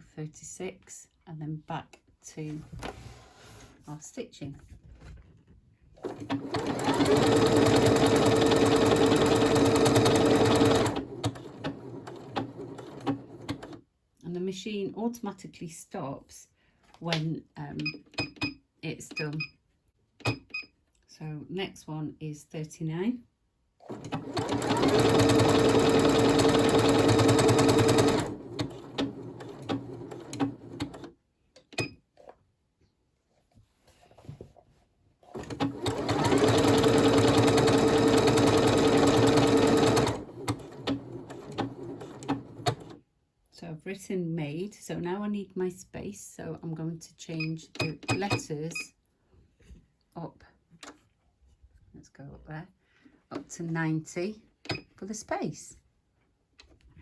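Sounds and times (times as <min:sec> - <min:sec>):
sewing machine stitching: 0:06.0 - 0:13.8, 0:23.8 - 0:31.1, 0:35.3 - 0:43.0.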